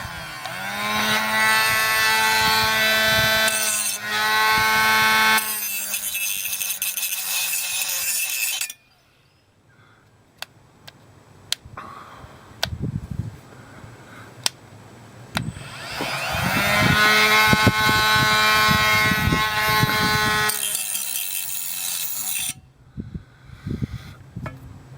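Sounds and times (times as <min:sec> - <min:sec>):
angle grinder cutting: 0:00.0 - 0:08.9, 0:15.4 - 0:22.6.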